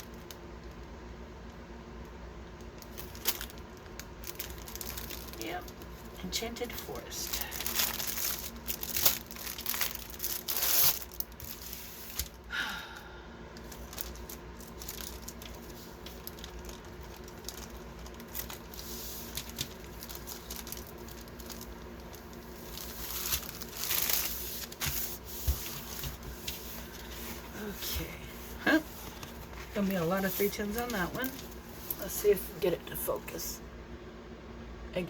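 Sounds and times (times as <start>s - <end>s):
plastic packaging crinkling: 2.6s - 12.5s, 13.6s - 33.0s.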